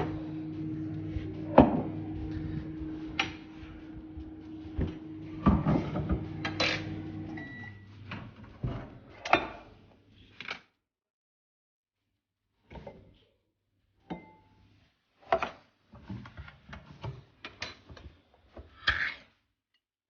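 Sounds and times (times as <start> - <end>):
low electrical hum: 0.0 - 8.6.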